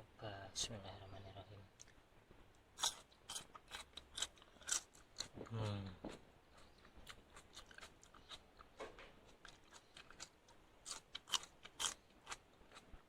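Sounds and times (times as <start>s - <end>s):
person chewing crunchy food: 2.8s - 13.0s.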